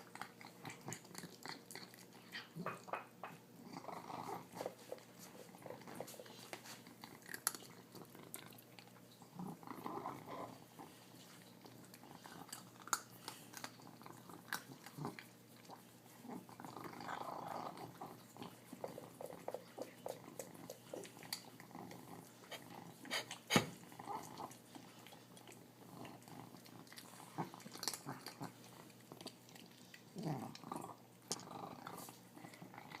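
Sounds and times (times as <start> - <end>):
cat chewing food: 0.0 - 33.0
cat piggy noises: 12.0 - 25.0.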